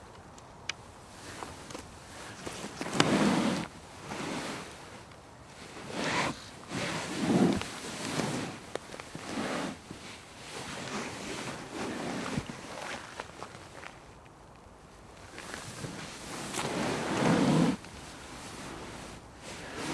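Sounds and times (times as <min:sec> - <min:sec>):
couch cushions creaking: 0:02.1 - 0:04.6, 0:05.7 - 0:13.7, 0:15.3 - 0:19.9
fabric rustling: 0:15.2 - 0:19.9.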